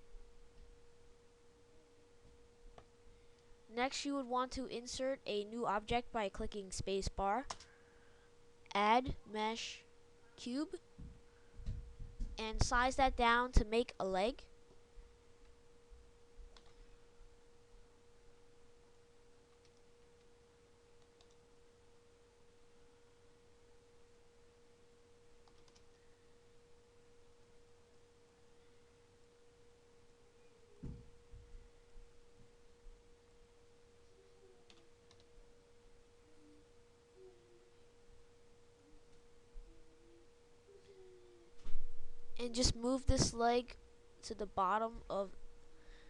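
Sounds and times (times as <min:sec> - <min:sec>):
faint single-pitch hum: 0:00.0 - 0:46.0
faint clicks: 0:16.5 - 0:16.8, 0:34.7 - 0:35.3.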